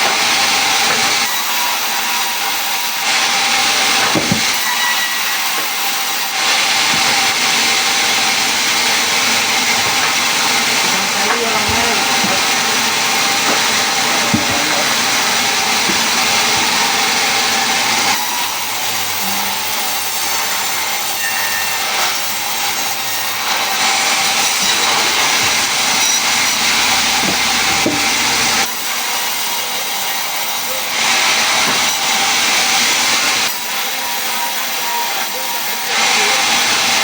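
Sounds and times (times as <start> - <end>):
woodworking tool rasping wood: 0.0 - 28.7.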